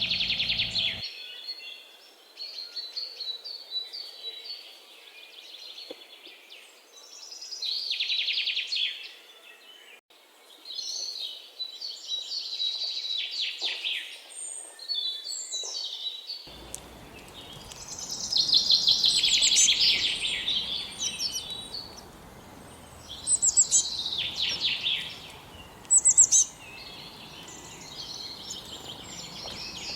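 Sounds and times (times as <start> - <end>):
fast high bird trills: 0.0 - 1.0, 16.5 - 29.9
songbirds chirping and singing: 0.0 - 1.0, 16.5 - 29.9
steady background hiss: 16.5 - 29.9.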